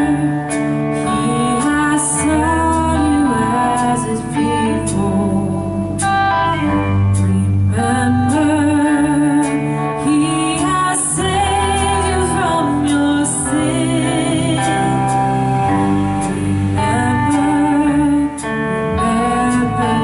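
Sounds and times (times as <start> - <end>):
guitars: 0.0 - 20.0
worship band playing: 0.0 - 20.0
people singing: 9.4 - 20.0.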